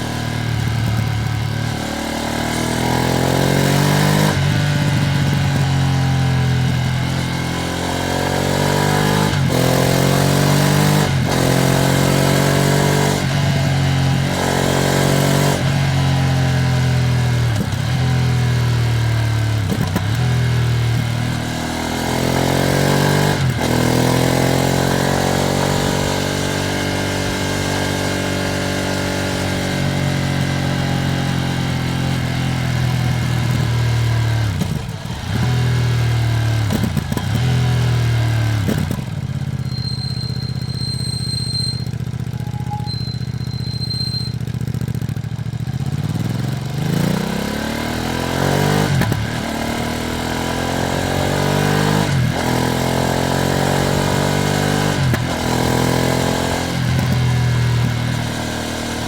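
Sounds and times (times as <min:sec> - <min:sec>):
motorcycle accelerating through gears: 0:00.0 - 0:59.0.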